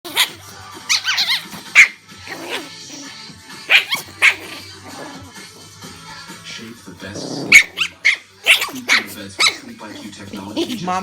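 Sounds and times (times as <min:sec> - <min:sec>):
dog yipping: 0:00.1 - 0:04.7, 0:07.5 - 0:09.7
dog whining: 0:00.1 - 0:05.3, 0:07.3 - 0:09.7.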